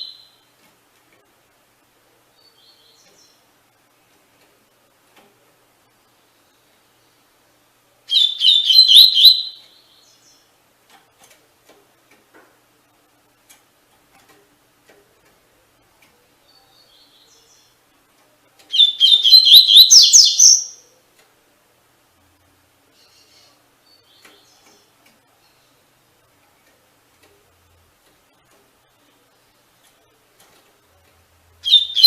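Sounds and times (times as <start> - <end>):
bird singing rapid high notes: 8.1 - 9.9, 18.7 - 20.8, 31.6 - 32.0.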